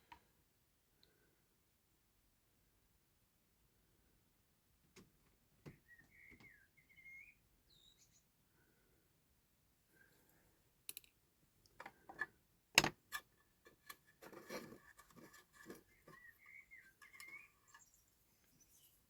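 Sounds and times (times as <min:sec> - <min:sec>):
faint bird chirps: 0:05.6 - 0:08.9, 0:15.6 - 0:19.0
metal tweezers clicking and tapping: 0:10.9 - 0:11.1.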